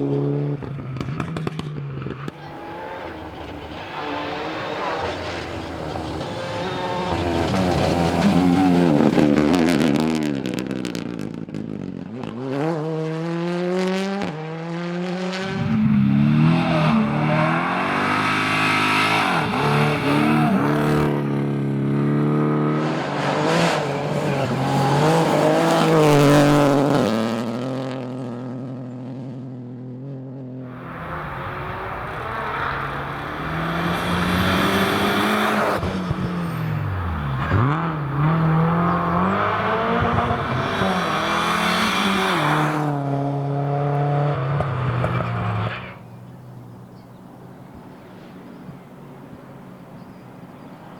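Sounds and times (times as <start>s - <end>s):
rally car engines revving: 0.0s - 49.4s.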